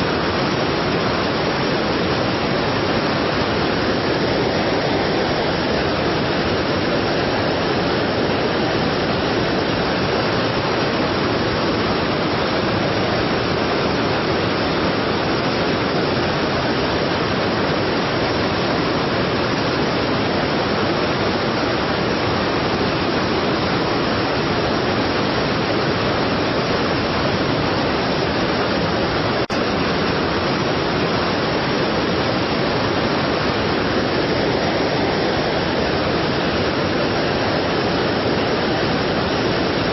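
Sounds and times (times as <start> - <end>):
waterfall rushing: 0.0 - 39.9.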